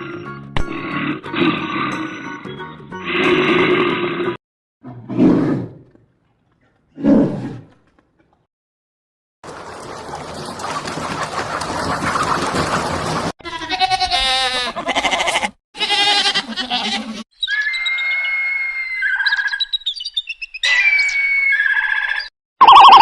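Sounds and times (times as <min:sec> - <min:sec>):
quavering bleat-like calls: 0:13.4 - 0:17.2.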